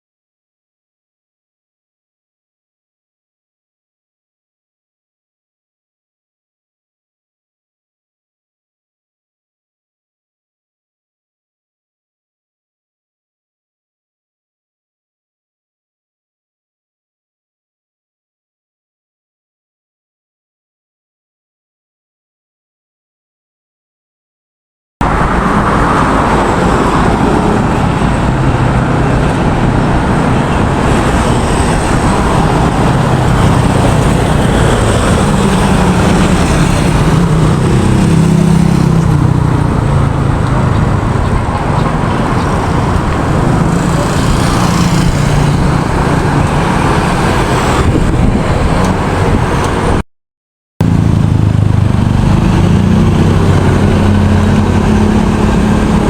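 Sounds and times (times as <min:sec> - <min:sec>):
road traffic: 0:25.0 - 0:50.0, 0:50.8 - 0:56.0.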